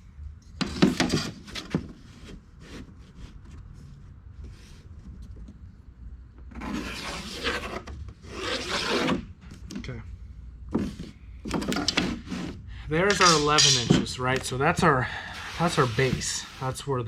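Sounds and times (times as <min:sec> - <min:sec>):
scraping rub on wood: 0:06.6 - 0:09.2, 0:15.3 - 0:16.7.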